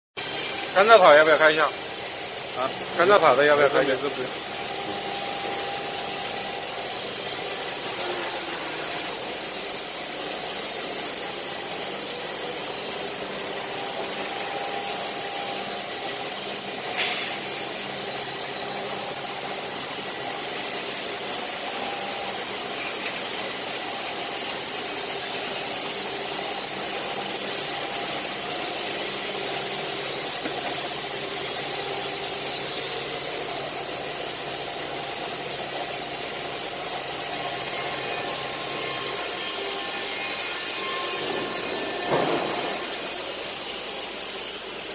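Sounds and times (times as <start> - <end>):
industrial machinery humming: 0.2 - 44.9
sharp metallic clank: 16.9 - 17.6.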